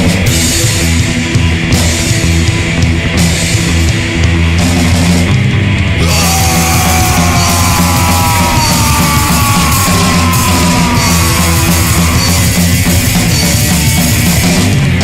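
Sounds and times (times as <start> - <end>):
rock band playing: 0.0 - 15.0.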